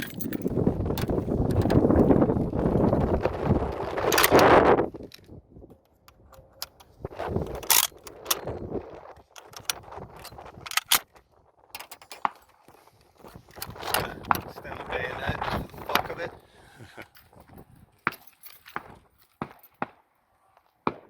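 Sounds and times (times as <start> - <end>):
sharp clicks and knocks: 0.0 - 2.1, 4.0 - 11.0.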